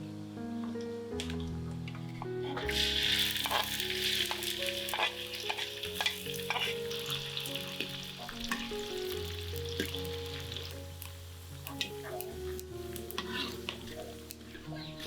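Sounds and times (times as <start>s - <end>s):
spatula scraping a pan: 2.4s - 9.1s, 11.6s - 15.0s
food sizzling in hot oil: 2.6s - 15.0s.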